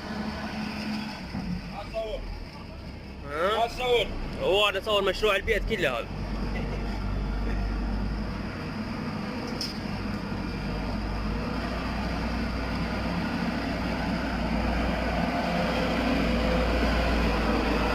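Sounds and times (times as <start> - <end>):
engine running with deep hum: 1.2 - 17.9.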